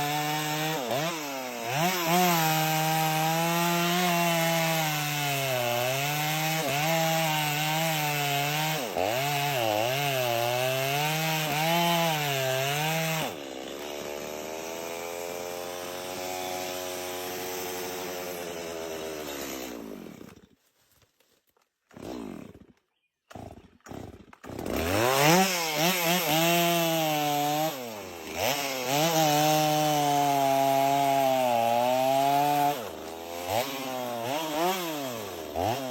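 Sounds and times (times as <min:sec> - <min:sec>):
chainsaw cutting wood: 0:00.0 - 0:20.6, 0:21.8 - 0:35.9.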